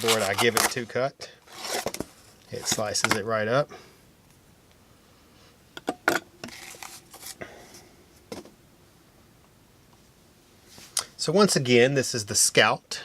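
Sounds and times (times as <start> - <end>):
knife cutting cardboard: 0.0 - 0.9, 1.5 - 2.0.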